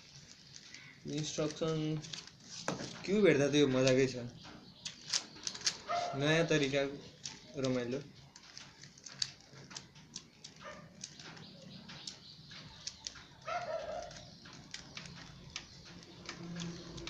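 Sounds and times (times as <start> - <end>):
plastic puzzle clicking: 4.8 - 5.8, 6.6 - 17.0.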